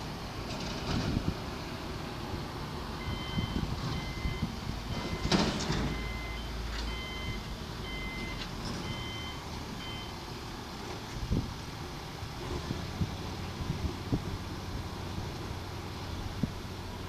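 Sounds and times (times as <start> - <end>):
low engine rumble: 0.0 - 17.0
reversing alarm beeping: 3.0 - 10.2.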